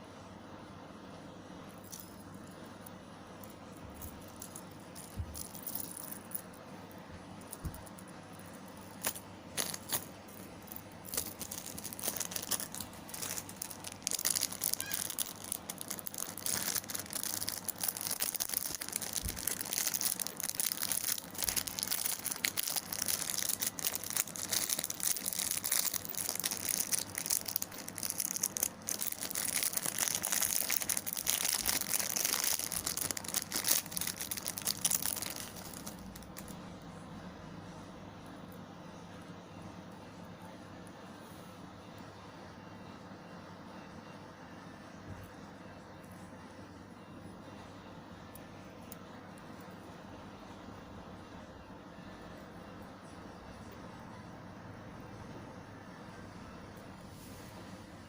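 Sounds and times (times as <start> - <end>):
plastic packaging crinkling: 3.9 - 6.4, 8.7 - 36.6
small clicks and rattles: 7.4 - 36.6.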